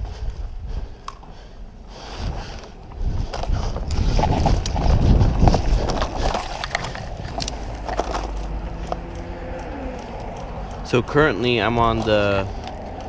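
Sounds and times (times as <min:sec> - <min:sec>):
rumble of movement on microphone: 0:00.0 - 0:13.0
leaves and twigs crackling: 0:02.6 - 0:10.9
footsteps through undergrowth: 0:03.5 - 0:10.8.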